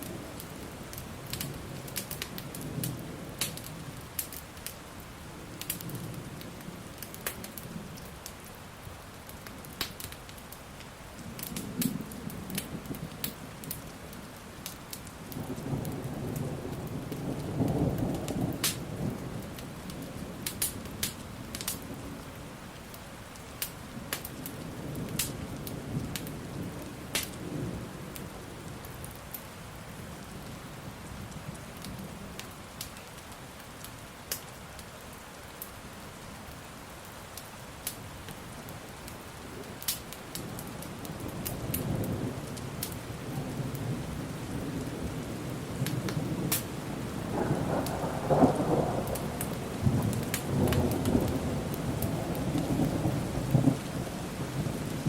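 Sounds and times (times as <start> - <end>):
wood fire crackling and popping: 0.0 - 5.0, 5.6 - 27.5, 31.3 - 35.8, 36.6 - 43.9, 45.8 - 54.0
steady rain: 0.0 - 55.0
low thunder rumbling: 40.5 - 55.0.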